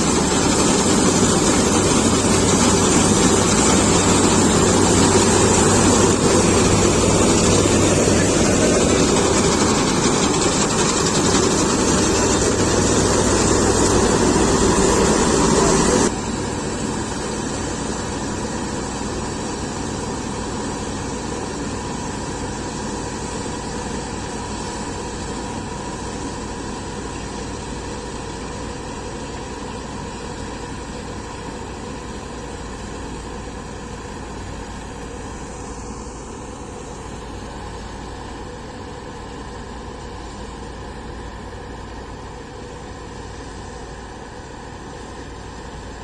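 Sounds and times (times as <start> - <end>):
combine harvester engine running: 0.0 - 46.0.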